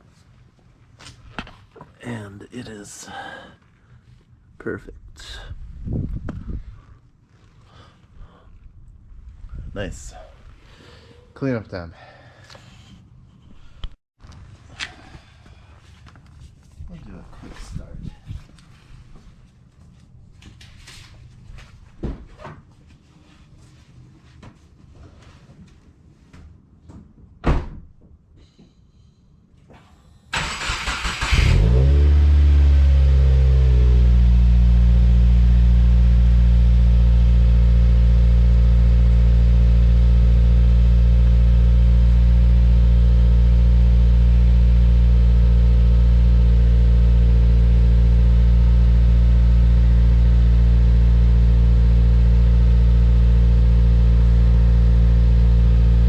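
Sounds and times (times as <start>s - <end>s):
thump: 22.0s - 22.3s, 27.4s - 27.8s
car starter cranking: 29.8s - 32.0s
car engine revving and idling: 30.4s - 56.0s.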